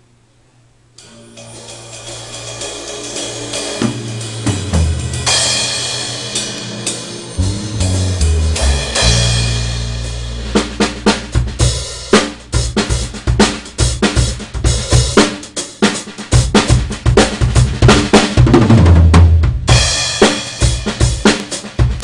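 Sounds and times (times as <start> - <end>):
cymbal wash: 1.0 - 15.4
drum kit groove: 1.0 - 22.0
low bass notes: 3.3 - 14.6.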